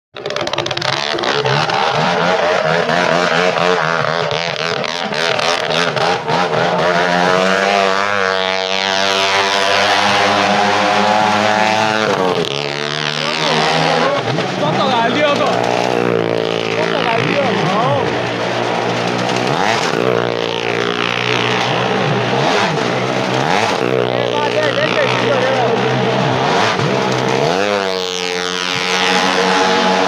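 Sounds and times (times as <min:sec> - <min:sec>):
motorcycle engine revving: 0:00.1 - 0:30.0.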